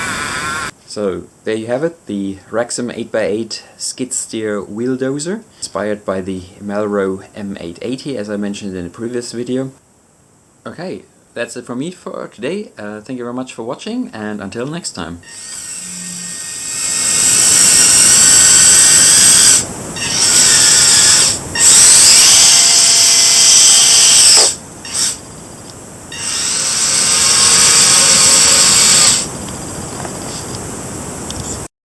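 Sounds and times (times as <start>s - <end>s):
small electric motors whining: 0.0s - 0.7s, 15.2s - 25.3s, 26.1s - 29.4s.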